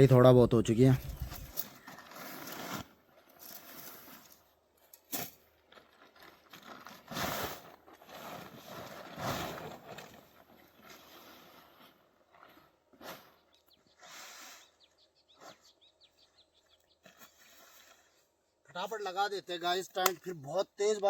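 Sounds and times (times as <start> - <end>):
rustling and scraping handling: 0.9 - 13.6.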